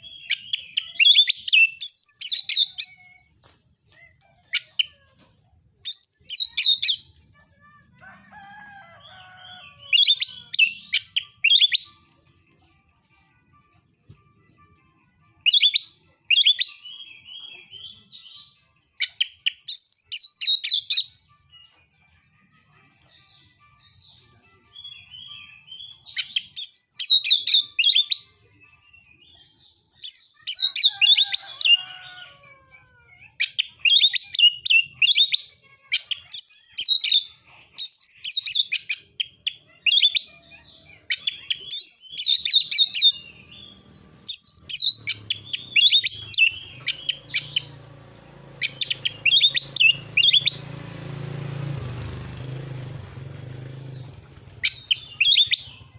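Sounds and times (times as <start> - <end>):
magpie-robin singing: 0.0 - 5.0, 5.8 - 7.2, 9.4 - 12.1, 15.3 - 21.7, 23.1 - 32.2, 33.4 - 50.7, 53.7 - 55.9.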